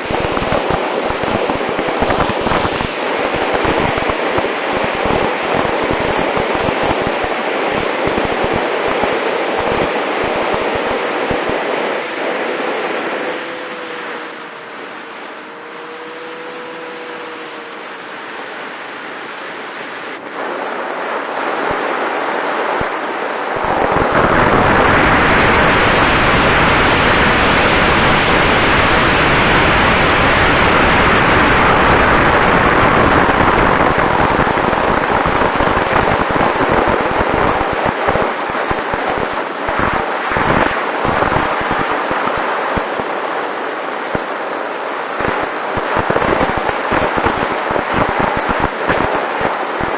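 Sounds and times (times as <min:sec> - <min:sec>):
faint steady motor tone: 0:00.0 - 0:22.0
wind rushing on microphone: 0:00.0 - 0:49.9.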